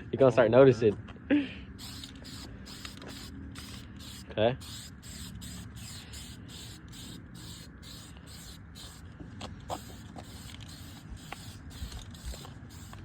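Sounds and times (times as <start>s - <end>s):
spray can hissing in short bursts: 1.8s - 9.1s, 9.7s - 13.0s.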